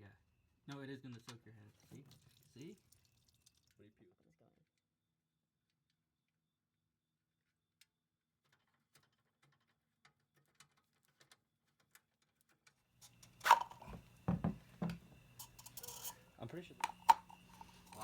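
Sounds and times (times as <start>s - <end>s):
low steady hum: 13.0s - 18.0s.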